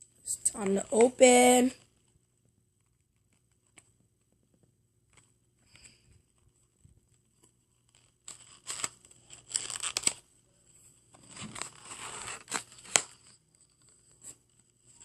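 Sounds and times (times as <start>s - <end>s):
packaging tearing and crinkling: 7.9s - 10.2s, 11.2s - 13.4s.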